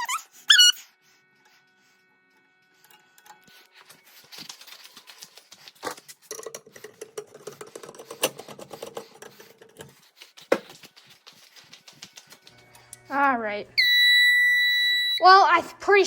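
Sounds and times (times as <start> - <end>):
clicking and clattering of devices: 2.8 - 9.9.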